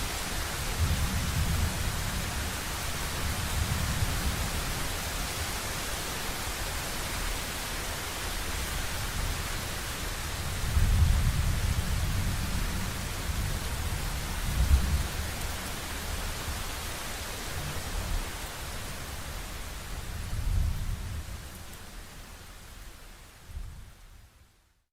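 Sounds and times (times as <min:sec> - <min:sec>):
rain hiss: 0:00.0 - 0:24.8
low rolling thunder: 0:00.6 - 0:04.7, 0:10.4 - 0:15.7, 0:20.1 - 0:21.4.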